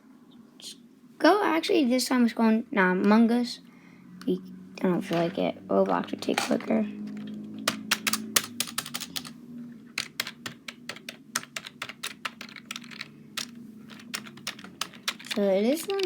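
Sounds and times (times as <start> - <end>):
keyboard typing clicks: 7.1 - 9.3, 10.0 - 16.0.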